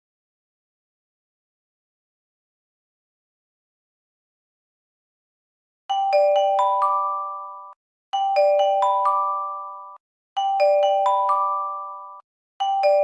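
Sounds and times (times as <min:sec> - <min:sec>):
bell-like alert chime: 0:06.0 - 0:13.0.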